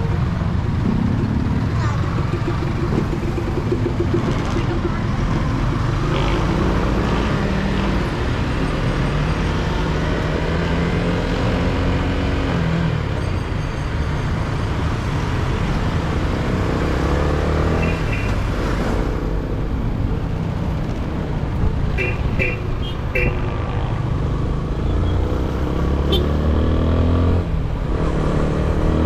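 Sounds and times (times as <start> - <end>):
wind and road noise: 0.0 - 29.0
motorcycle engine accelerating: 0.2 - 8.0.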